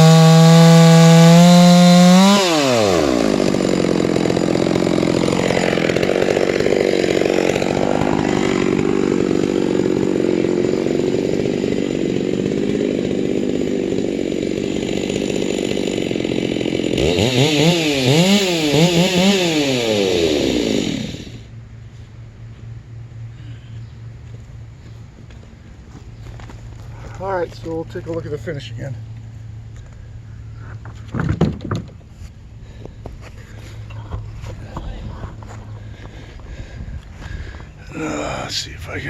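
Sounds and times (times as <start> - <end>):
chainsaw cutting log: 0.0 - 21.5.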